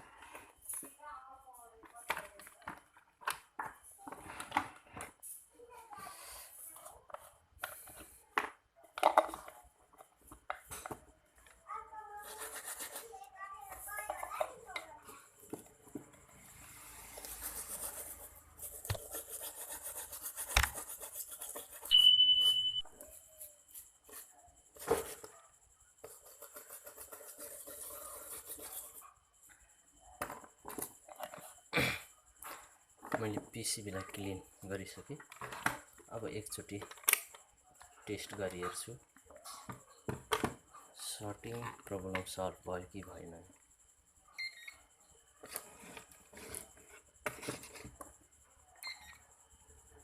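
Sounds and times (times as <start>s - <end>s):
brush scrubbing circuit board: 17.0s - 22.0s.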